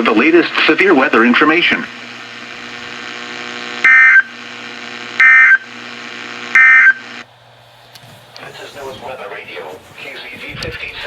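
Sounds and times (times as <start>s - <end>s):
radio hiss and hum: 0.0s - 11.0s
digital data tone bursts: 5.2s - 5.7s, 6.5s - 7.2s.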